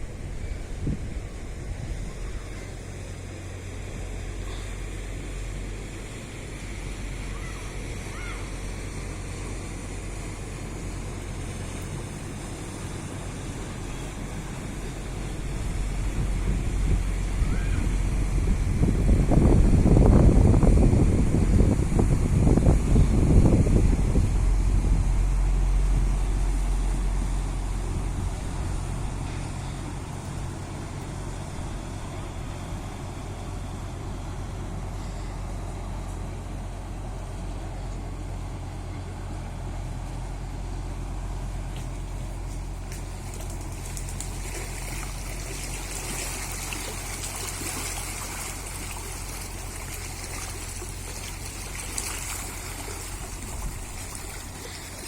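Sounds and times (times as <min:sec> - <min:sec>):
wind rumble on microphone: 0:00.0 - 0:07.3, 0:08.6 - 0:39.3, 0:41.8 - 0:55.0
water running in a stream: 0:00.0 - 0:20.0, 0:41.5 - 0:55.0.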